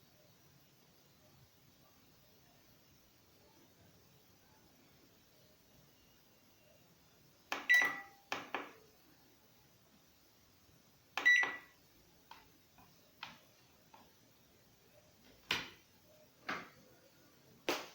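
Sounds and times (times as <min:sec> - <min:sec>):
microwave beep: 0:07.5 - 0:08.8, 0:11.2 - 0:11.8
push buttons clicking: 0:07.5 - 0:08.8, 0:11.2 - 0:11.7.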